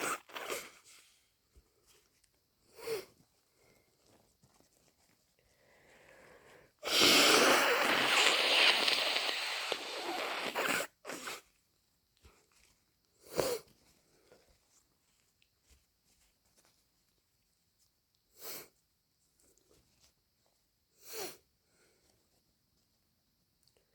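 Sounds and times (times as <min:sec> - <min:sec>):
forceful nose blowing: 0:00.0 - 0:00.7, 0:06.8 - 0:11.4
short nose sounds: 0:06.8 - 0:11.4.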